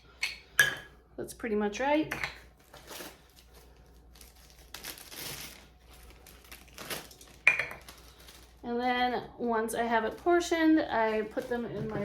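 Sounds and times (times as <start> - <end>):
plastic bag crinkling: 2.6 - 8.8.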